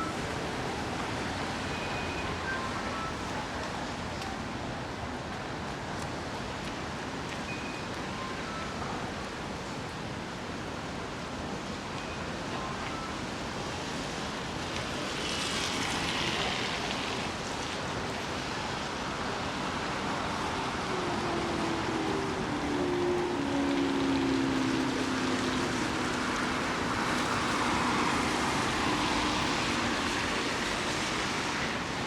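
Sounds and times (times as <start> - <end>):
wet city street noise: 0.0 - 32.0
vehicle passing on wet road: 13.7 - 32.0
rain hissing: 19.8 - 31.9.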